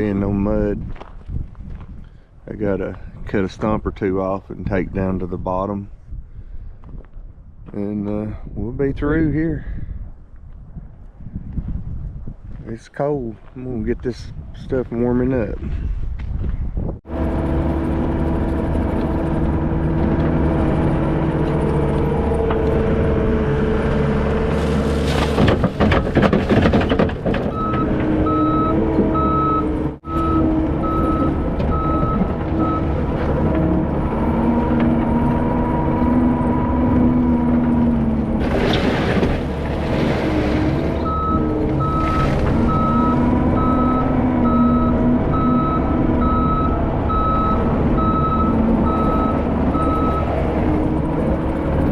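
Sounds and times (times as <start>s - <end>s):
heavy diesel machine running: 17.1s - 51.9s
reverse alarm beeping: 27.6s - 32.9s, 41.1s - 50.3s.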